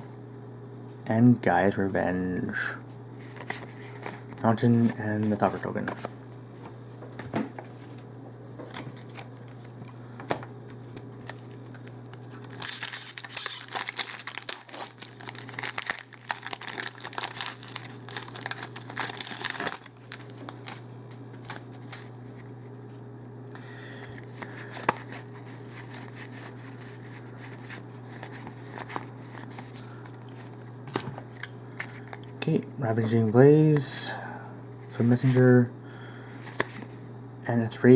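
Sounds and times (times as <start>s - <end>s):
foil wrapper crinkling and tearing: 11.2s - 20.8s, 21.4s - 22.5s, 24.1s - 30.7s.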